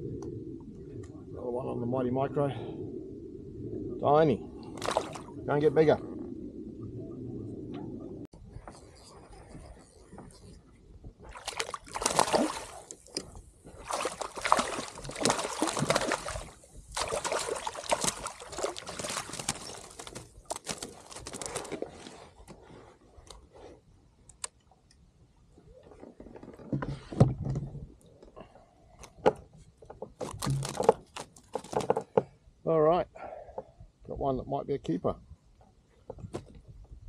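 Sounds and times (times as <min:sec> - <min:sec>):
water sloshing around kayak: 0:08.5 - 0:22.7.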